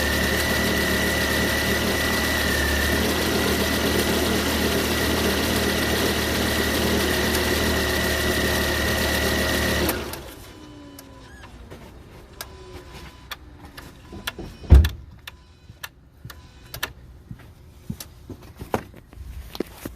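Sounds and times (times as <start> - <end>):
car engine idling: 0.0 - 12.5.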